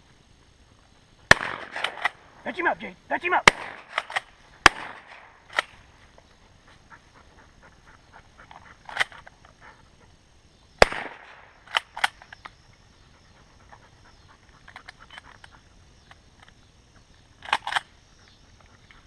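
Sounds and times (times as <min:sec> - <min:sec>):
shotgun shots: 0:01.3 - 0:02.3, 0:03.4 - 0:05.8, 0:10.8 - 0:12.1.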